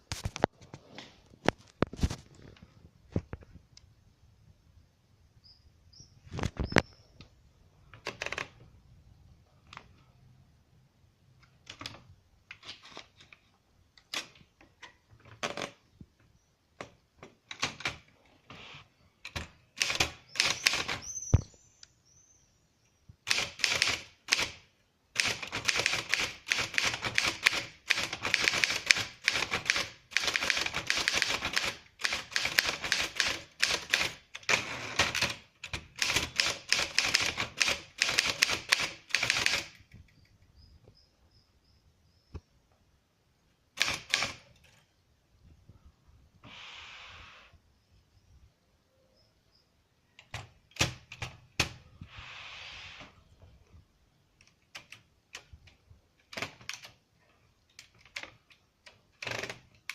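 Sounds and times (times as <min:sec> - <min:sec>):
typewriter typing: 0:19.2 - 0:21.0, 0:23.2 - 0:39.9, 0:43.8 - 0:44.5.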